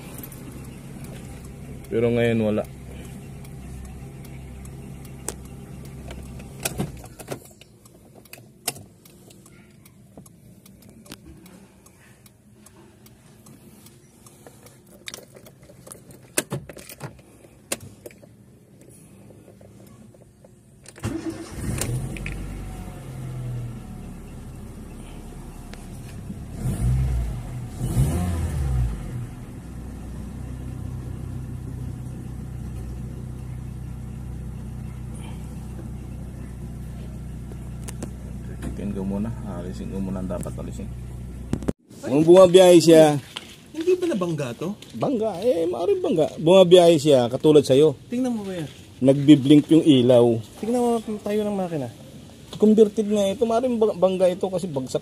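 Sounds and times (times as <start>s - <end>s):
car engine idling and revving: 0.0s - 55.0s
clicks: 0.2s - 21.2s.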